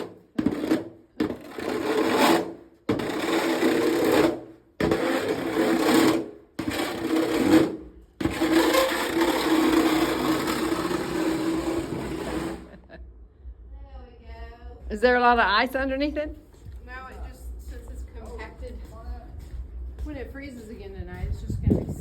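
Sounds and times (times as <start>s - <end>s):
snow shovel scraping floor: 0.0s - 12.9s.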